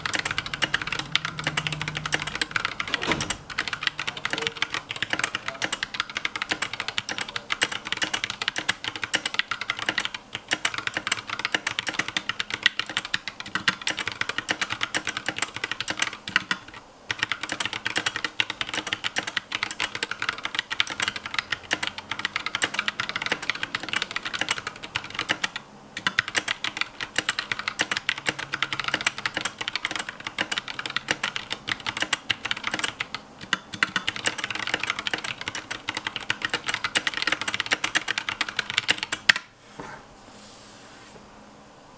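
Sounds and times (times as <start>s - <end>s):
mechanical keyboard typing: 0.0s - 39.5s.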